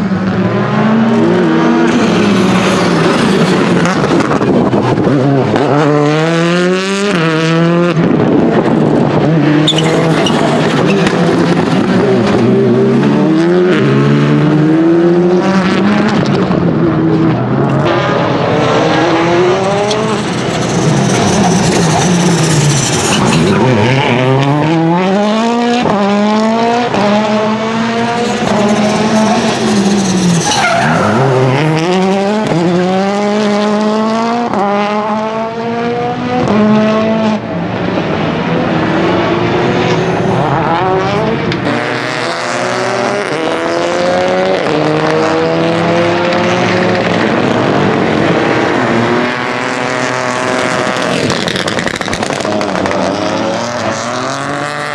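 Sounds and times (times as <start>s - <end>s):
car engine accelerating: 0.0s - 54.9s
tyres skidding: 0.5s - 7.3s, 8.0s - 14.7s, 15.7s - 33.8s.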